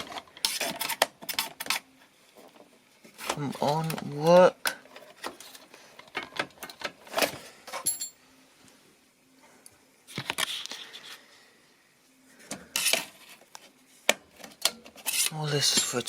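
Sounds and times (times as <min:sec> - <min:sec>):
screwdriver scraping and rubbing: 0:12.8 - 0:13.4, 0:15.0 - 0:15.7.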